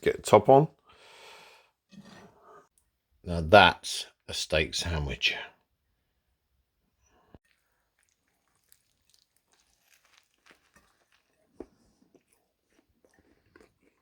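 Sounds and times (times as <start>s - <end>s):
biting and chewing: 7.4s - 14.0s.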